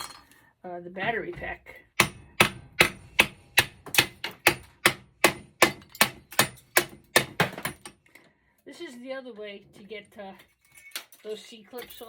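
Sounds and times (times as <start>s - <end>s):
hammer striking metal: 2.0s - 7.8s.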